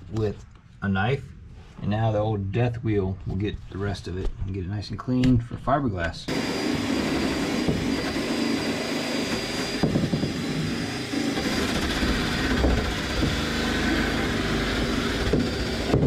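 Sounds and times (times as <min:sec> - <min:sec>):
angle grinder grinding: 0:06.3 - 0:16.0
thin high whine: 0:06.3 - 0:16.0.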